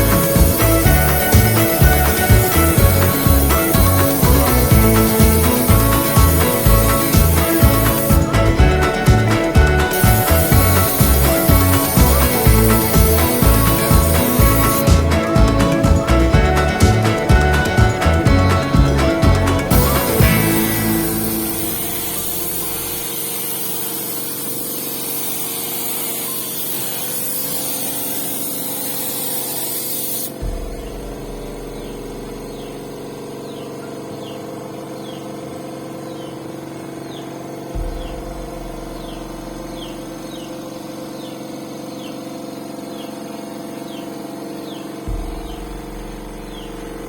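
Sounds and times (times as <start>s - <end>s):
steady hum: 0.0s - 29.6s, 30.2s - 47.0s
spray paint hissing: 0.0s - 34.4s.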